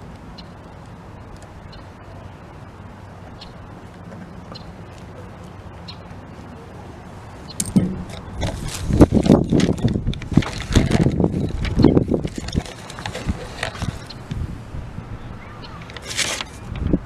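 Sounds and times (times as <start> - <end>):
metal pieces knocking and clattering: 7.6 - 8.6
low hum: 7.6 - 8.9.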